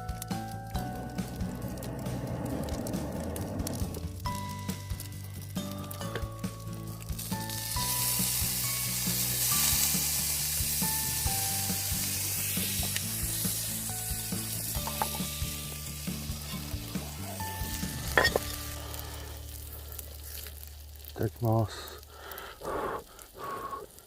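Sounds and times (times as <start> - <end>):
soft background music: 0.0 - 19.8
food sizzling in a pan: 3.8 - 22.4.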